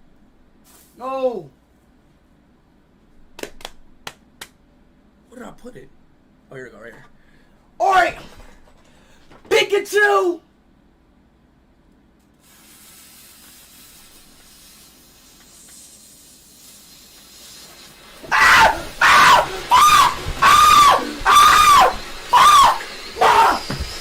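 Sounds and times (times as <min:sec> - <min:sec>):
firework hissing: 0:00.6 - 0:01.0, 0:12.4 - 0:24.0
firework squealing whistles: 0:13.6 - 0:24.0.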